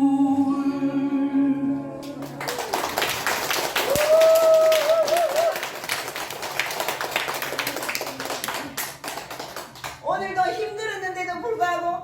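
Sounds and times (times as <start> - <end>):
people clapping: 2.0 - 10.1.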